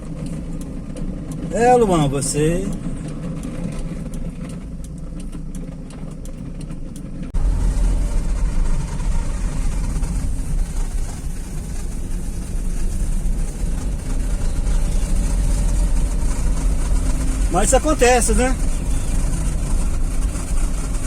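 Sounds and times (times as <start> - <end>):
car engine and road noise: 0.0 - 21.0
loud low rumble with hiss: 7.4 - 21.0.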